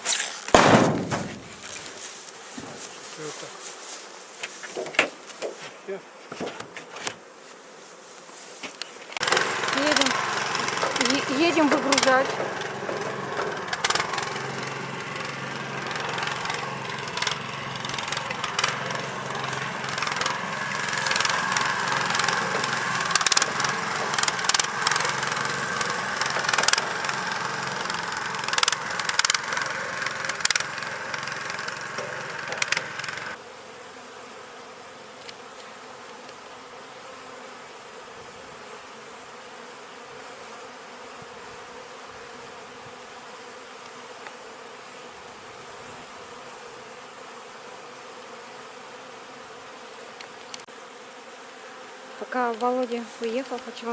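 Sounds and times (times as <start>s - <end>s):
honeybees buzzing: 0.0s - 53.9s
knocks and rattles: 0.5s - 1.8s, 9.2s - 33.4s
vehicle engine driving off: 9.2s - 33.4s.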